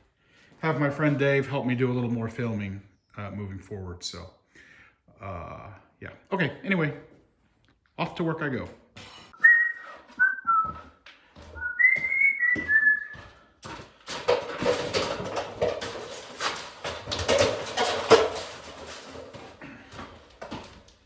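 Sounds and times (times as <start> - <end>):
man whistling: 9.4 - 11.0, 11.6 - 13.3
knocks and clattering: 13.6 - 21.0
rustling: 13.6 - 21.0.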